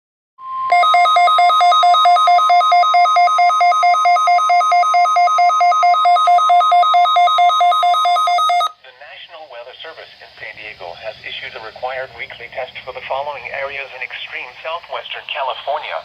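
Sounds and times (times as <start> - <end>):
steady high alarm tone: 0.4 - 8.8
rapid pulsing beeps: 0.7 - 8.7.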